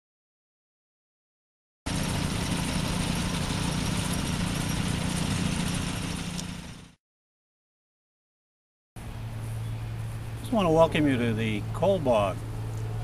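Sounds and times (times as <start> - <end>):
engine running: 1.9 - 7.0, 9.0 - 13.0.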